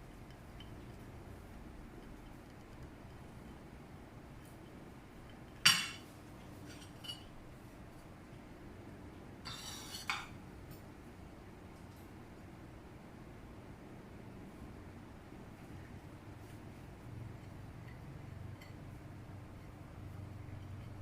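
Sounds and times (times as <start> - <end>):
ceramic plates clinking: 5.6 - 6.1, 9.5 - 10.3.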